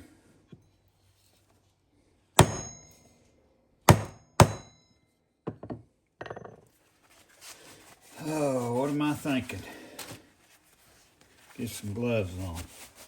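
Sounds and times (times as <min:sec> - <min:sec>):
hammer striking metal punch: 0:02.4 - 0:03.1, 0:03.9 - 0:04.9.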